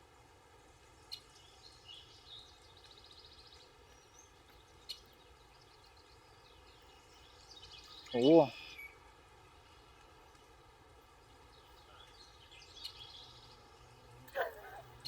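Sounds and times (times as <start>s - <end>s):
faint birds chirping: 0.0s - 15.0s.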